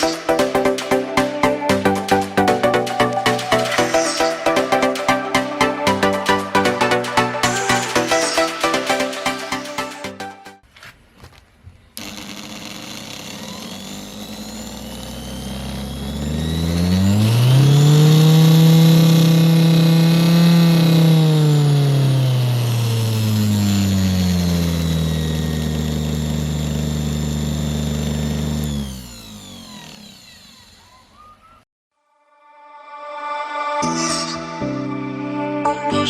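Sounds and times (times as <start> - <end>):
electric motor whine: 12.0 - 31.5.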